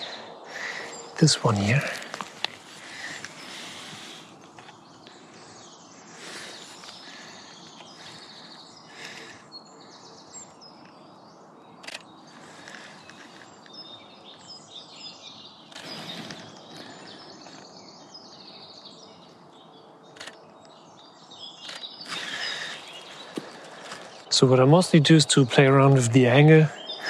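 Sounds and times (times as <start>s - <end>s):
birds chirping and singing: 0.0s - 27.0s
outdoor background hiss: 0.0s - 27.0s.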